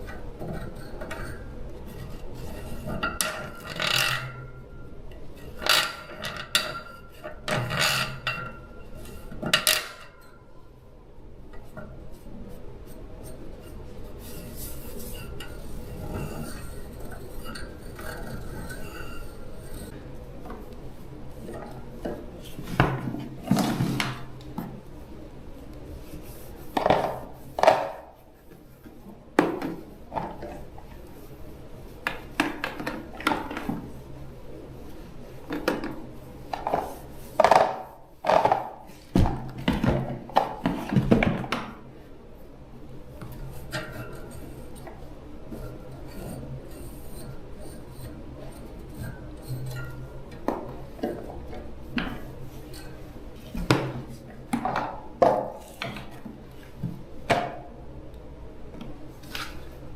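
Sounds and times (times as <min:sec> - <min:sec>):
steady low hum: 0:00.0 - 0:59.9.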